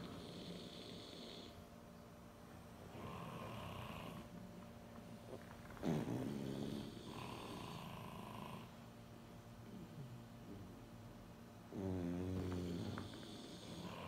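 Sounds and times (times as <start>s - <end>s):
dogs snoring: 0.0s - 1.7s, 2.8s - 4.4s, 5.2s - 8.9s, 9.6s - 11.0s, 11.7s - 14.0s.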